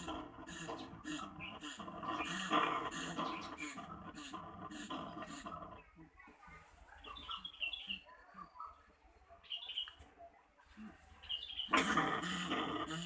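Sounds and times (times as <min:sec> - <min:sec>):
rat growling squeal: 0:00.0 - 0:05.8, 0:11.7 - 0:13.0.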